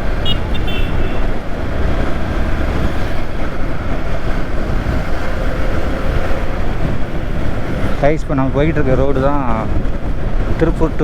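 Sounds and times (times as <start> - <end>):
motorcycle engine running: 0.0 - 4.8
wind rush on microphone: 0.0 - 11.0.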